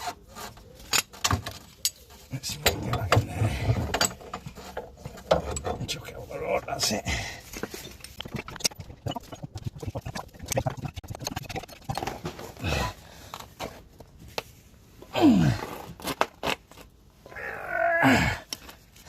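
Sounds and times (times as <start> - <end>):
metal clicks and scrapes: 0.0 - 12.6.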